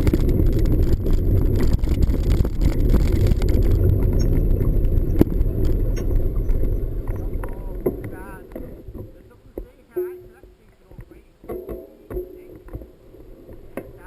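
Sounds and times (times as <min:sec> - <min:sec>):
bike rattling and knocking: 0:00.0 - 0:08.8
bike tyres rumbling on dirt trail: 0:00.0 - 0:10.4.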